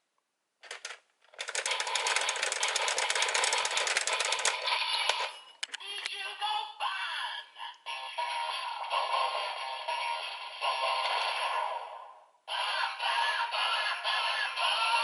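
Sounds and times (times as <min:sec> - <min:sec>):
toy rapid clicks: 0:00.6 - 0:05.3.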